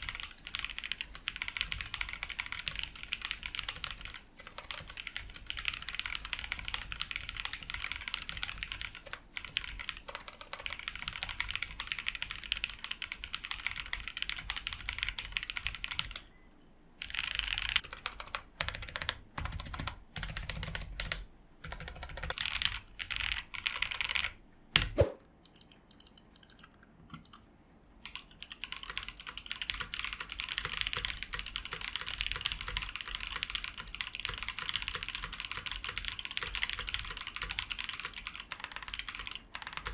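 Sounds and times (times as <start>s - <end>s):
mechanical keyboard typing: 0.0s - 16.2s, 17.0s - 27.4s, 28.0s - 39.9s
loud keyboard clacks: 28.7s - 39.9s.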